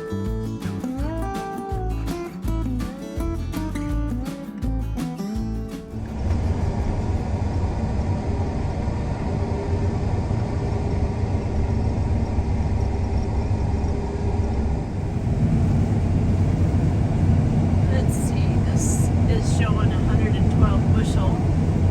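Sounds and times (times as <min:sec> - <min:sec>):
combine harvester running: 0:05.9 - 0:21.9.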